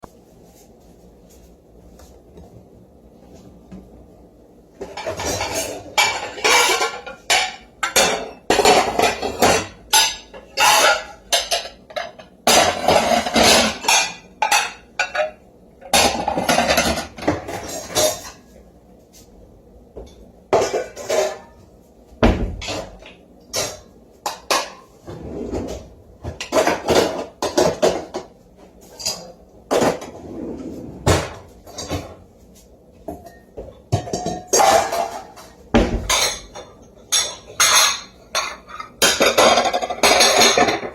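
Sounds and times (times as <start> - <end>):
dishes and cutlery clattering: 4.8 - 18.5, 20.0 - 21.6, 22.3 - 30.4, 31.0 - 32.2, 33.1 - 40.9.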